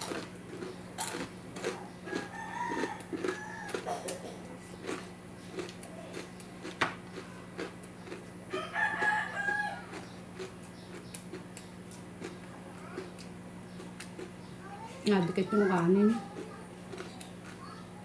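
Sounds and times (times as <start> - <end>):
rooster crowing: 1.8 - 3.9, 8.5 - 10.0
close-up chewing clicks: 4.8 - 14.5, 15.1 - 17.8.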